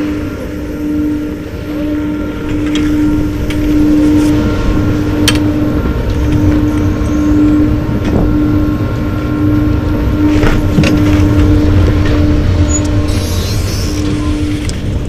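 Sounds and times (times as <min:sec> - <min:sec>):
low hum: 0:00.0 - 0:15.0
wind buffeting microphone: 0:00.0 - 0:15.0.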